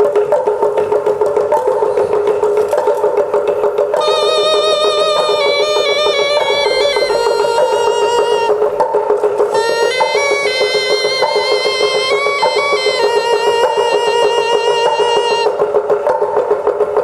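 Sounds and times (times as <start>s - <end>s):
fast rattling percussion: 0.0s - 17.0s
steady drone: 4.0s - 15.6s
wind instrument melody: 4.0s - 15.8s.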